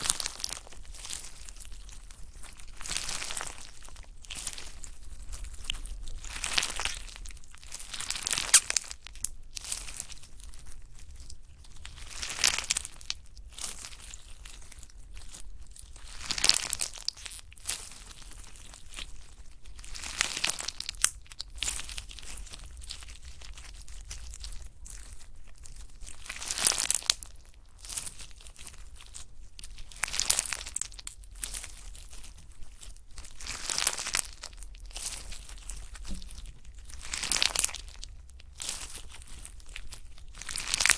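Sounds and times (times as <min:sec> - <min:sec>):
slime crackling when squeezed: 0:05.5 - 0:10.1, 0:26.2 - 0:28.5, 0:29.9 - 0:32.2, 0:33.3 - 0:40.9.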